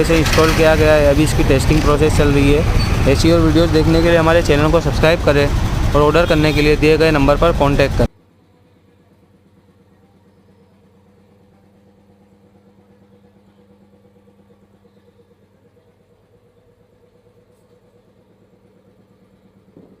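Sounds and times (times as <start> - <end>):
air compressor running: 0.0 - 8.1.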